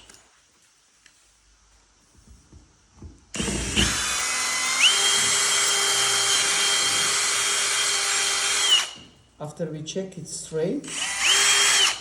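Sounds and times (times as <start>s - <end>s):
electric drill whining: 3.3s - 9.1s, 10.9s - 12.0s.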